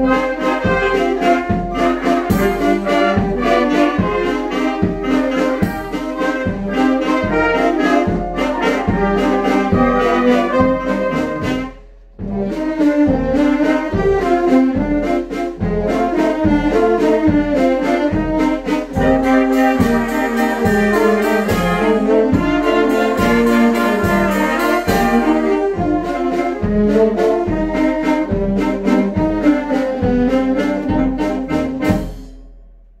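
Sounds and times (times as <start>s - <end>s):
children's brass band playing: 0.0s - 32.6s
regular low beat: 10.7s - 12.8s.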